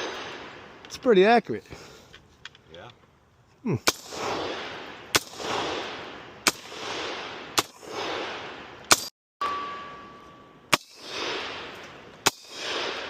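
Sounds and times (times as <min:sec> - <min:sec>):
gunshots with long echo: 0:00.0 - 0:00.8, 0:03.8 - 0:09.1, 0:10.7 - 0:13.0.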